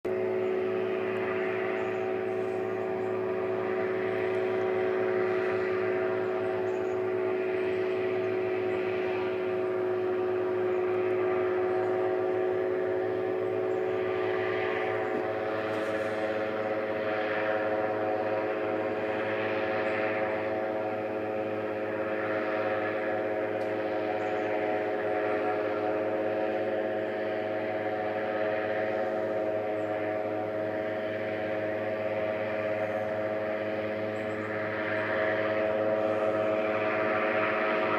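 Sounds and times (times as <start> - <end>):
airboat engine and propeller drone: 0.0 - 37.9.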